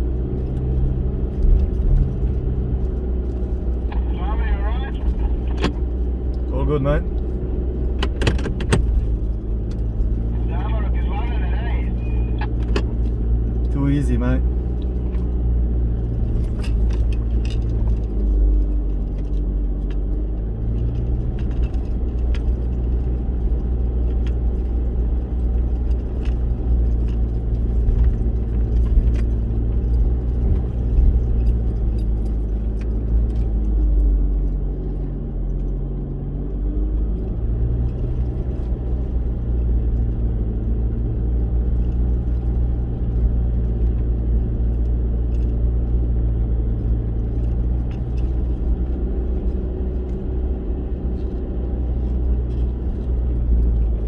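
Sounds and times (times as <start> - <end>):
vehicle engine at low revs: 0.0 - 54.0
light rattles and jangles: 16.2 - 35.8.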